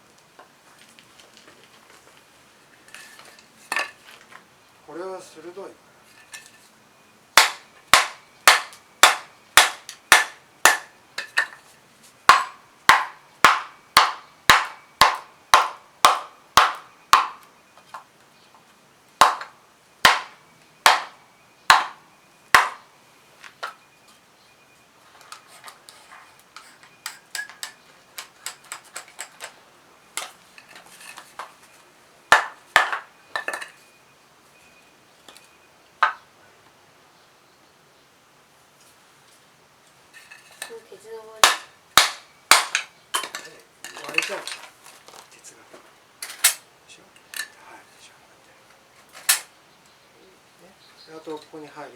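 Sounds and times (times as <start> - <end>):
iron rod striking wood: 7.4 - 11.6, 12.3 - 17.5, 19.2 - 22.9, 32.3 - 33.6, 41.4 - 43.4.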